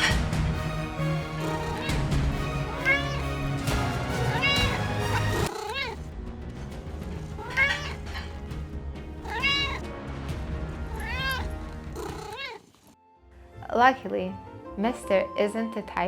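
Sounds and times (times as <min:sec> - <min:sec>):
background music: 0:00.0 - 0:12.4, 0:13.0 - 0:16.0
cat meowing loudly: 0:01.4 - 0:02.0, 0:02.6 - 0:03.4, 0:04.2 - 0:06.1, 0:07.4 - 0:08.3, 0:09.2 - 0:09.8, 0:10.9 - 0:12.7.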